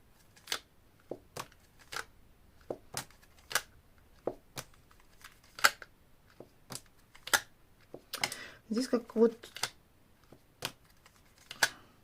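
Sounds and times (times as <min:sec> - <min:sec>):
card snaps and clicks: 0:01.3 - 0:07.5, 0:10.6 - 0:11.8.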